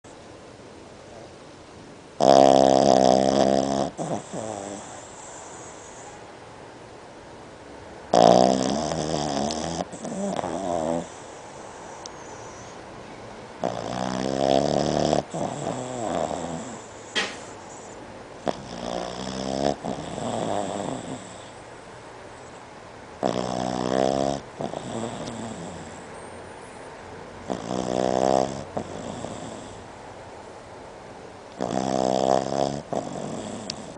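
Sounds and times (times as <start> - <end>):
dog snoring: 2.2 - 6.2, 8.1 - 12.7, 13.6 - 21.6, 23.2 - 26.1, 27.4 - 29.8, 31.5 - 33.9
dog breathing: 2.2 - 6.3, 8.1 - 12.9, 13.6 - 21.7, 23.2 - 26.3, 27.4 - 29.9, 31.6 - 33.9.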